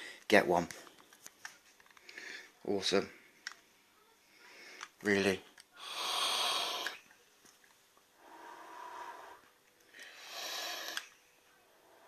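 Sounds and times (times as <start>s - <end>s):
breathy vape exhale hisses: 5.8s - 7.0s, 8.2s - 11.1s.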